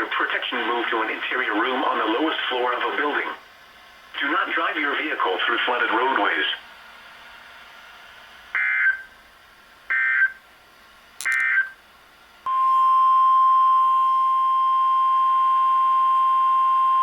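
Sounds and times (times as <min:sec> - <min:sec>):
steady warning alarm tone: 0:08.6 - 0:09.1, 0:09.9 - 0:10.4, 0:11.2 - 0:11.8.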